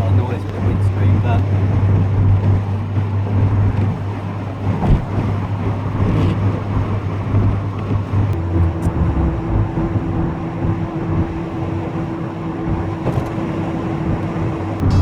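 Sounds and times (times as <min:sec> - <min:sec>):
tyre and wind noise: 0:00.0 - 0:11.3
low engine hum: 0:00.0 - 0:15.0
higher steady note: 0:08.4 - 0:15.0.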